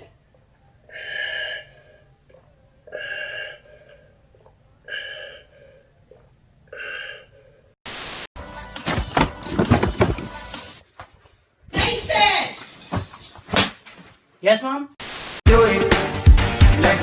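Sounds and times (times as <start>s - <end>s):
breathy voice-like sounds: 0.0s - 7.8s.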